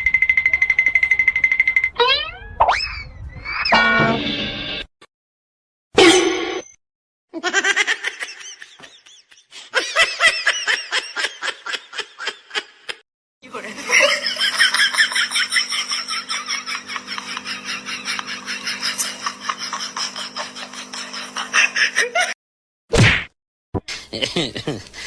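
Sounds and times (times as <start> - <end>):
steady hum: 13.4 - 22.1
rapid pulsing laughter: 13.5 - 22.4.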